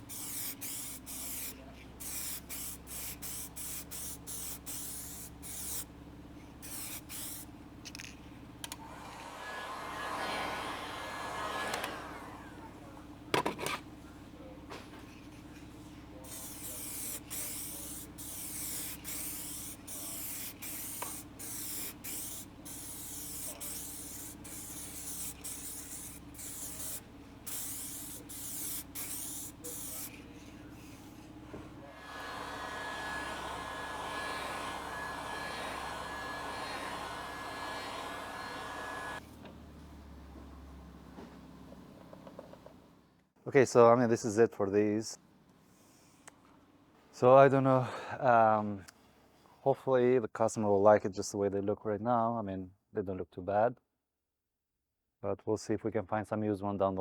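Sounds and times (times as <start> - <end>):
aerosol spray hissing: 0.0 - 5.9, 6.6 - 7.5, 8.8 - 12.6, 16.2 - 31.2, 32.0 - 39.2.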